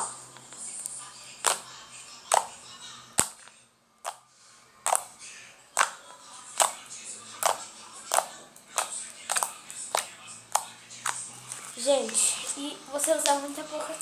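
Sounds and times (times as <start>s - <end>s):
slime clicking and popping: 4.9s - 5.1s, 7.4s - 10.7s.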